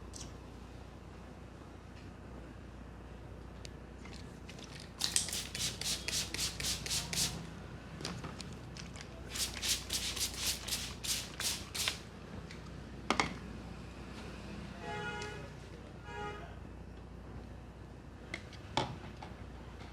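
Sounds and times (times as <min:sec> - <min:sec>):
hands massaging head and hair: 0:05.0 - 0:07.4, 0:09.3 - 0:12.0.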